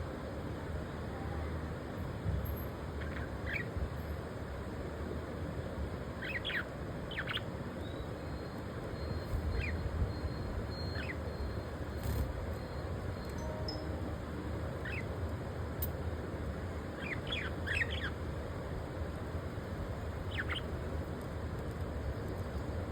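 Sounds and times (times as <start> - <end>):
low background noise: 0.0 - 22.9
budgerigars chirping: 3.0 - 3.7, 6.2 - 11.9, 14.8 - 15.2, 16.9 - 18.3, 20.2 - 20.9.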